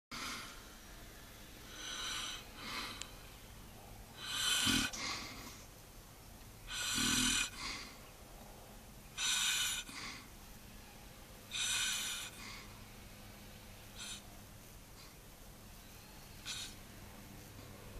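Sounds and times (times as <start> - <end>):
man snoring: 1.7 - 3.0, 4.2 - 5.5, 6.7 - 8.0, 9.2 - 10.3, 11.5 - 12.4.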